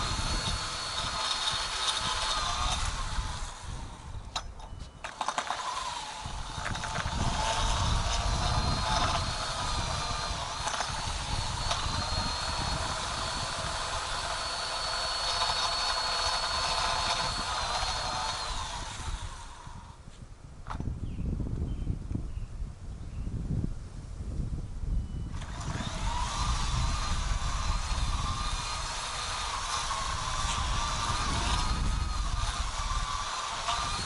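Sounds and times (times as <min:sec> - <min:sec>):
electric motor whining: 0:00.0 - 0:20.0, 0:25.3 - 0:34.0.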